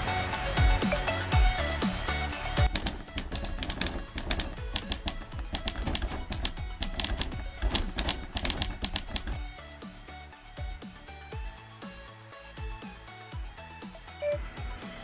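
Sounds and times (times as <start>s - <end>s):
fast beat background music: 0.0s - 15.0s
clicking percussion: 2.6s - 9.5s.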